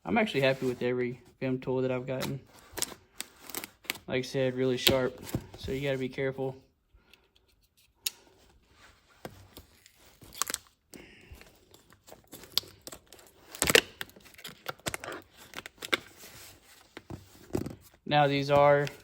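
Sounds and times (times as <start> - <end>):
packaging crinkling: 2.5 - 4.0, 9.4 - 17.4
packaging tearing: 2.6 - 4.0, 9.6 - 10.8, 11.6 - 16.5.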